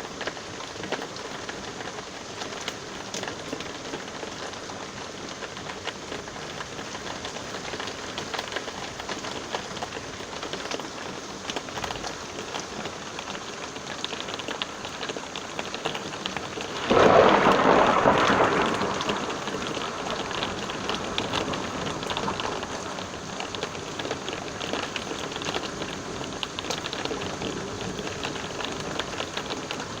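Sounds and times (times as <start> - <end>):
rain drops pattering: 0.0 - 30.0
thunder rumbling: 16.6 - 30.0.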